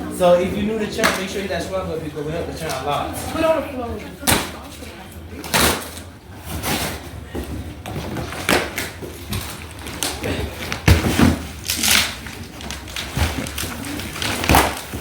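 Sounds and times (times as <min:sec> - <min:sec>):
items knocking and scraping on floor: 0:05.4 - 0:15.0.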